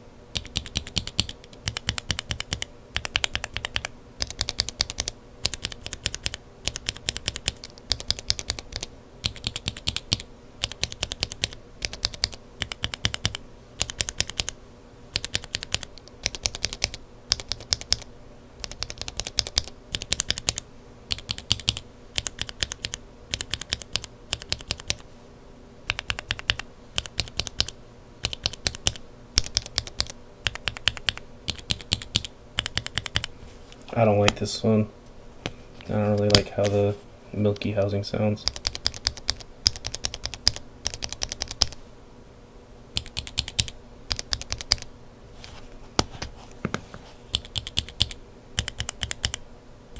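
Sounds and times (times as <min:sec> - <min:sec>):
mechanical keyboard typing: 0:00.3 - 0:25.0, 0:25.9 - 0:33.3, 0:38.4 - 0:41.8, 0:43.0 - 0:44.9, 0:47.3 - 0:49.4.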